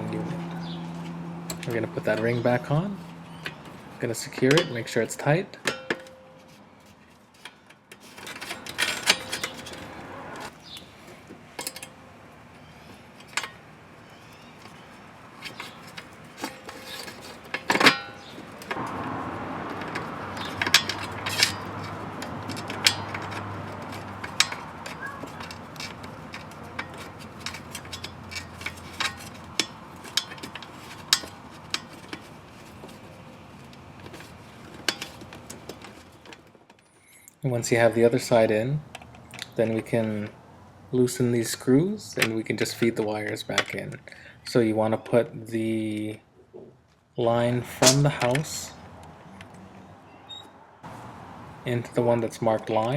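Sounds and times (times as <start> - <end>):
metal clicks and clinks: 11.6 - 12.0, 19.7 - 32.3.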